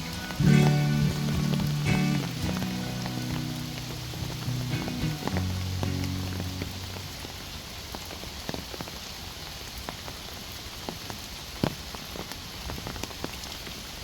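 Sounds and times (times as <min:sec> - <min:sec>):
low held musical tone: 0:00.0 - 0:07.3
rain falling in a forest: 0:00.0 - 0:14.0.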